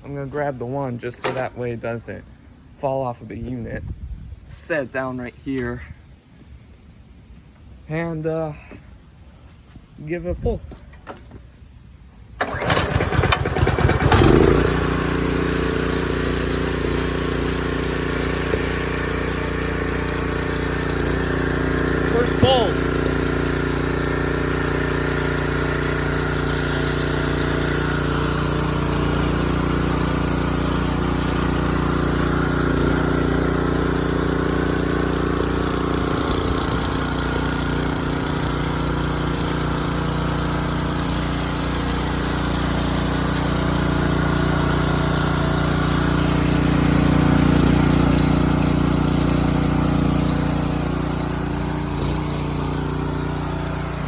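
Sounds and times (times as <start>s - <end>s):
pressure washer engine running: 12.4s - 54.0s.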